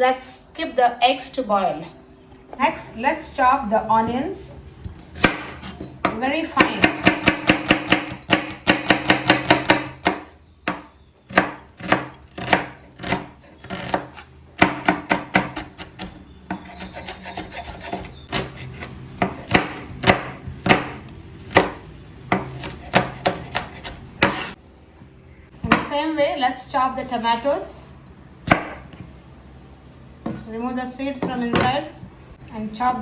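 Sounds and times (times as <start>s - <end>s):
knife chopping on cutting board: 5.2s - 24.6s, 28.5s - 29.0s.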